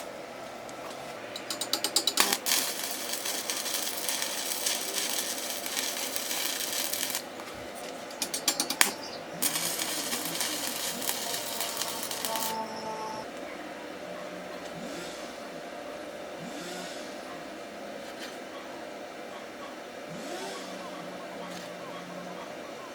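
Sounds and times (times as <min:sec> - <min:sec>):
spray paint hissing: 0:01.4 - 0:07.3, 0:08.2 - 0:12.6.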